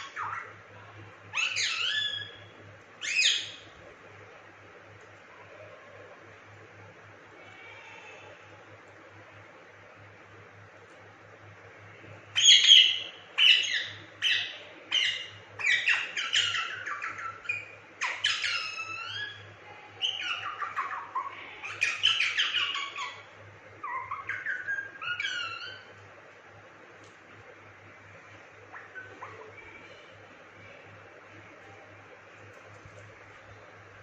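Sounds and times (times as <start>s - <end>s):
parakeet chirps and squawks: 0.0s - 3.7s, 12.3s - 26.0s, 28.2s - 30.8s.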